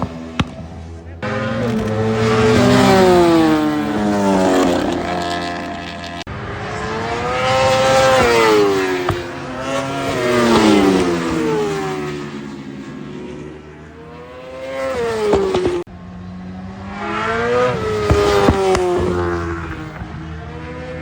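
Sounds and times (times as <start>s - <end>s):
motorcycles passing at high revs: 0.0s - 21.0s.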